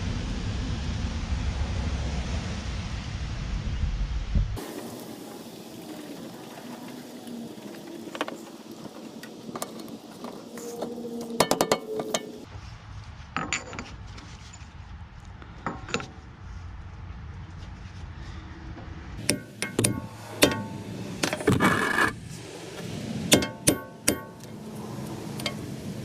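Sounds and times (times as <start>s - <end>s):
hand tools clinking on metal: 9.2s - 12.5s, 19.2s - 20.8s.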